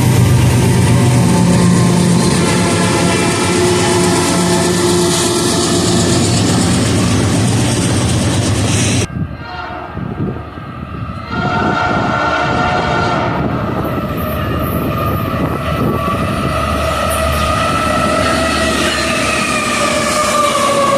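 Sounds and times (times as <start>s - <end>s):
locomotive air horn chord: 0.0s - 6.8s, 9.1s - 10.4s, 11.2s - 20.9s
passing train rumble: 0.0s - 20.9s.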